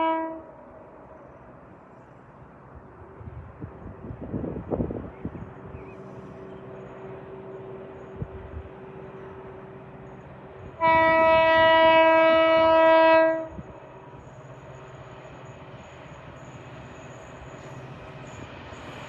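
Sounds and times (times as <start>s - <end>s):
locomotive horn blast: 0.0s - 0.5s, 10.8s - 13.6s
rumble of passing train: 0.0s - 19.0s.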